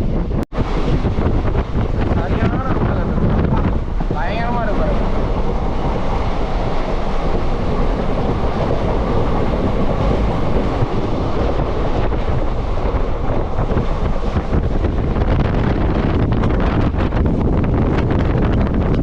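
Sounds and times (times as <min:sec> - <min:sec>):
train wheels rumbling on rails: 0:00.0 - 0:19.0.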